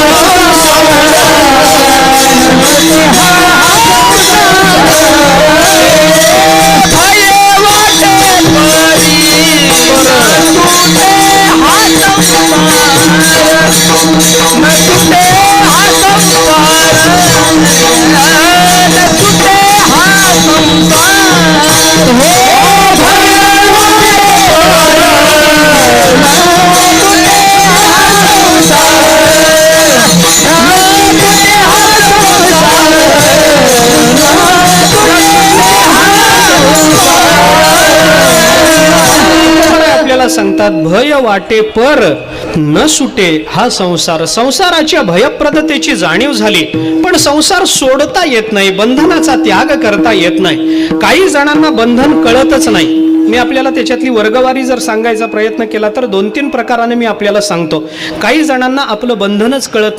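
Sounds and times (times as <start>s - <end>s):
person singing: 0.0s - 40.2s
even drumbeat: 0.0s - 40.8s, 45.2s - 55.4s
jingling hand cymbals: 0.0s - 59.9s.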